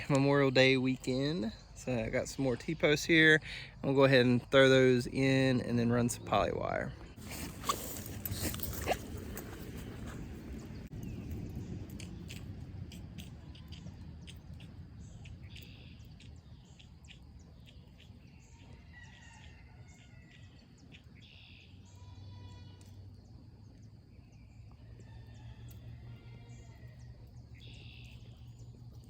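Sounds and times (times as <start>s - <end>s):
small birds chirping: 0.0s - 29.0s
bird trill: 13.4s - 22.8s, 27.4s - 28.8s.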